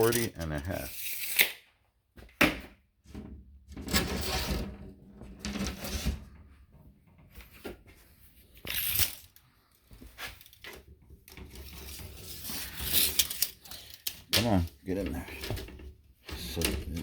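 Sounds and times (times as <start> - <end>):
wood scraping against wood: 11.5 - 17.0.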